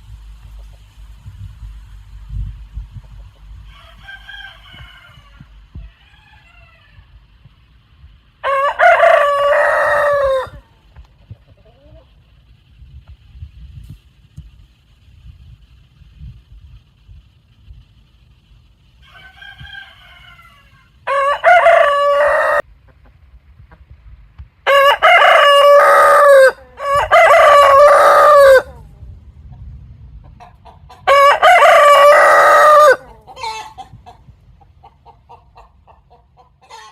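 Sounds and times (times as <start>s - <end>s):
roosters crowing: 3.0s - 12.5s, 18.8s - 22.7s, 24.6s - 29.0s, 30.4s - 36.9s
chicken clucks: 10.0s - 12.5s, 22.8s - 23.9s, 28.8s - 31.3s, 33.0s - 36.9s.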